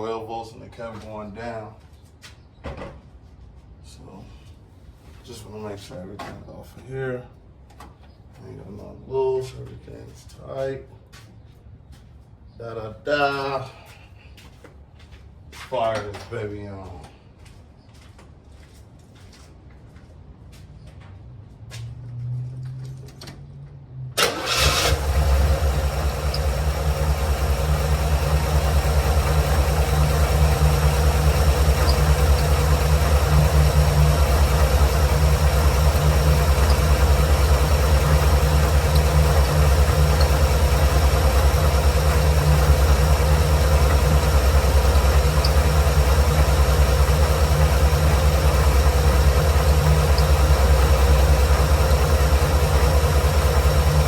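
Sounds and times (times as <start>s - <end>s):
car engine starting and idling: 24.1s - 54.0s
faint starter clicks: 24.2s - 54.0s.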